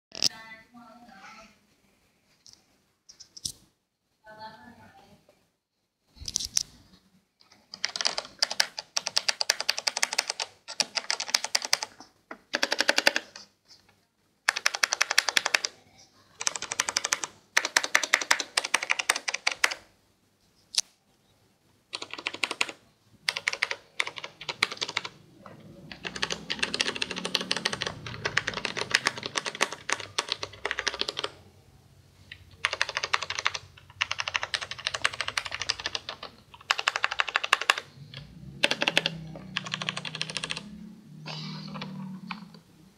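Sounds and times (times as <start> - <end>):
mechanical keyboard typing: 7.4 - 13.5, 14.4 - 15.8, 16.4 - 19.9, 21.9 - 31.4, 32.3 - 42.6.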